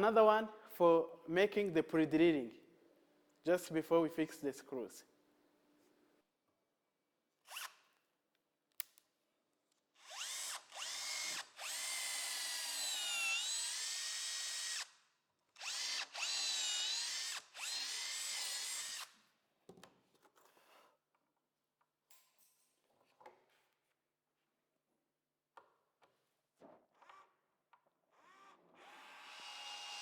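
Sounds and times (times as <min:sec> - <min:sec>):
power drill whining: 0:10.0 - 0:14.9, 0:15.6 - 0:19.1, 0:28.1 - 0:30.0.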